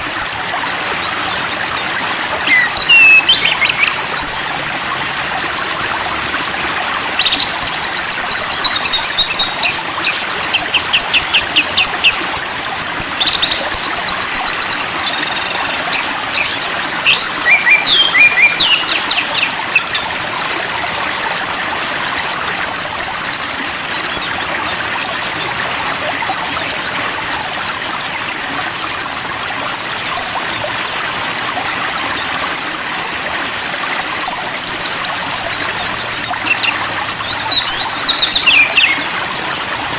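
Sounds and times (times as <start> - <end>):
small birds chirping: 0.0 - 0.4, 1.0 - 4.8, 7.2 - 20.2, 31.4 - 39.1
flowing water: 0.0 - 39.9.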